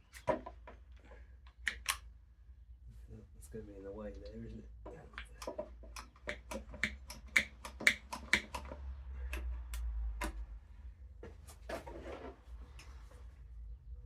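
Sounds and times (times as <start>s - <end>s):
tools and parts clicking: 1.5s - 2.1s, 5.2s - 10.4s.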